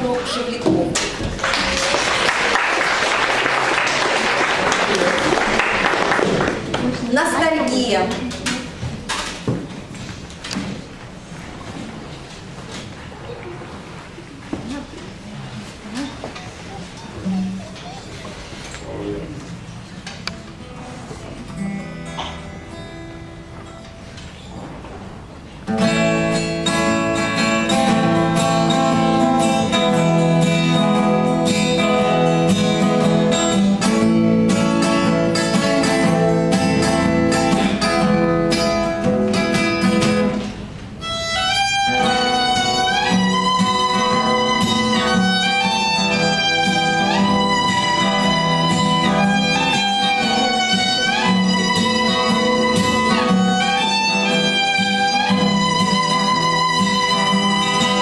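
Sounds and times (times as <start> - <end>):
plucked acoustic guitar: 16.0 - 58.0
violin with vibrato: 41.0 - 58.0.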